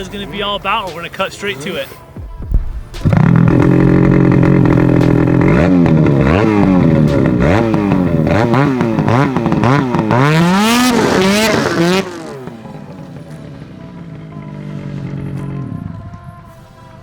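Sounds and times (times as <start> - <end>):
snowmobile engine revving: 3.0 - 16.1.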